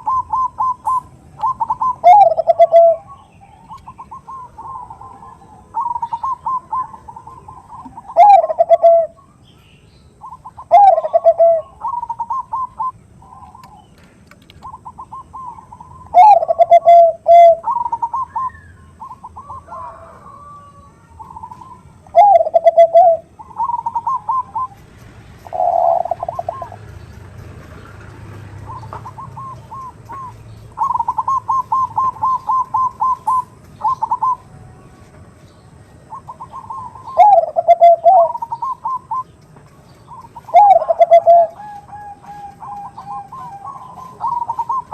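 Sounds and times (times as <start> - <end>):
dove drawn-out coos: 0.0 - 9.3, 10.2 - 13.8, 14.6 - 26.9, 27.8 - 34.5, 36.1 - 39.4, 40.0 - 44.9
dove rapid short notes: 21.3 - 34.5, 40.1 - 44.9.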